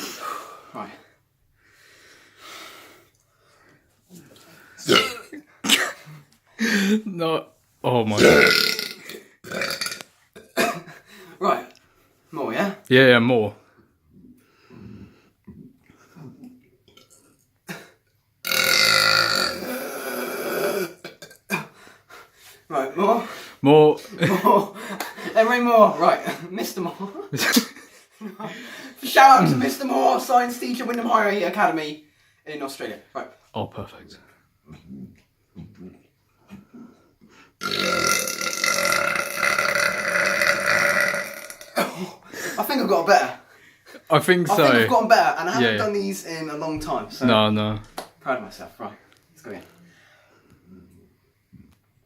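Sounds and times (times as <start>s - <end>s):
person burping loudly: 4.8s - 6.0s, 8.1s - 10.8s, 18.4s - 21.6s, 37.6s - 42.2s.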